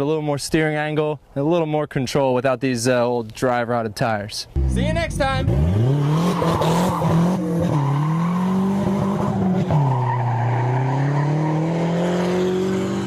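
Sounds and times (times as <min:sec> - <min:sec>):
car engine revving: 0:04.6 - 0:13.0.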